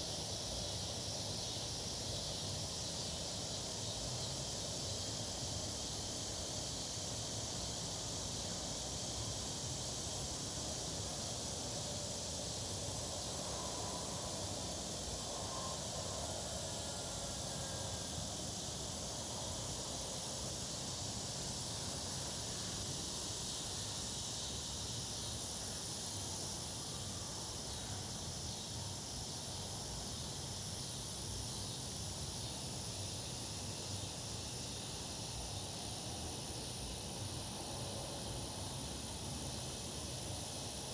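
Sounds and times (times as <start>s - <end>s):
insects trilling: 0.0s - 40.9s.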